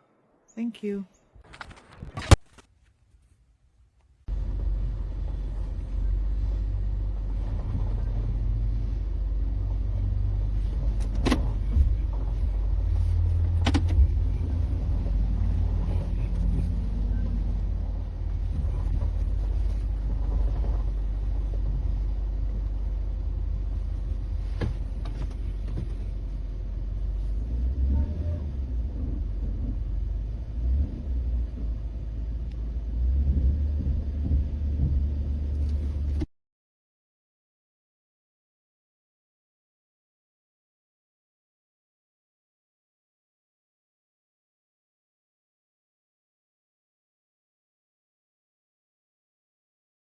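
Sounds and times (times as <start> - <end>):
vehicle engine and road rumble: 1.2 - 36.3.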